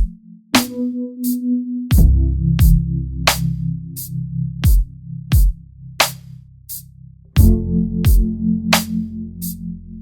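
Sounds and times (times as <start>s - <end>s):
lo-fi hip-hop beat: 0.0s - 10.0s
deep kick drum: 1.9s - 2.9s, 4.6s - 5.6s, 7.4s - 8.4s.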